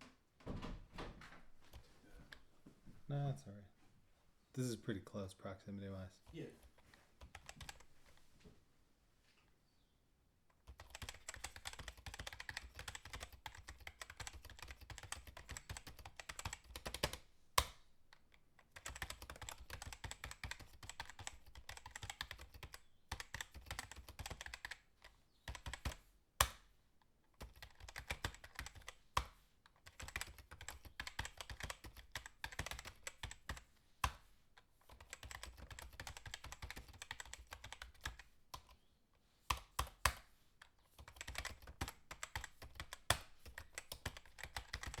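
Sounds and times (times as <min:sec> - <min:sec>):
fast typing on keyboard: 0:06.2 - 0:07.9, 0:10.6 - 0:17.2, 0:18.6 - 0:26.0, 0:27.4 - 0:34.2, 0:34.8 - 0:38.8, 0:39.5 - 0:45.0.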